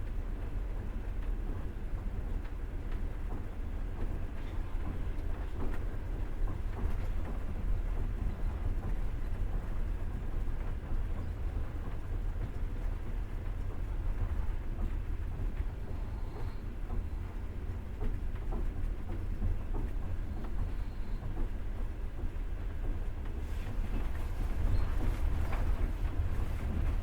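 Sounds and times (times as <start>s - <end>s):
train carriage rumbling on track: 0.0s - 27.0s
faint clicks and rattles: 23.2s - 27.0s.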